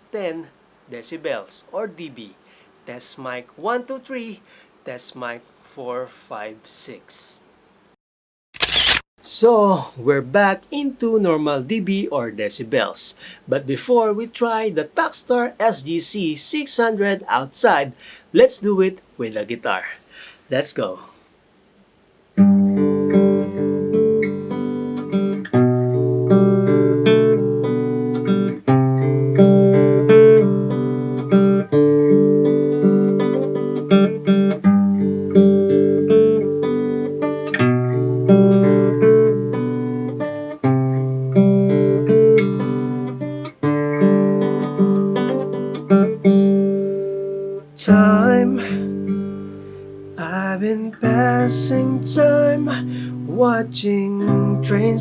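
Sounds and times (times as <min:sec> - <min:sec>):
acoustic guitar strumming: 0:22.4 - 0:55.0.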